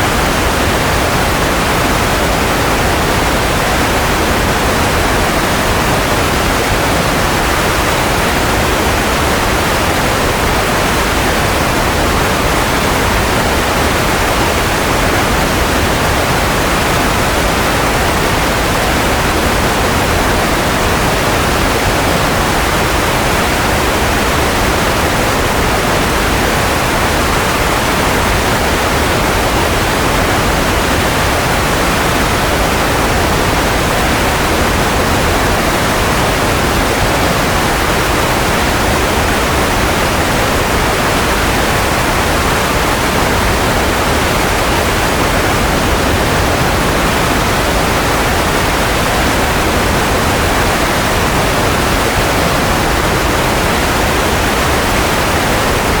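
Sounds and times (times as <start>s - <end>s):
steady white noise hiss: 0.0s - 56.0s.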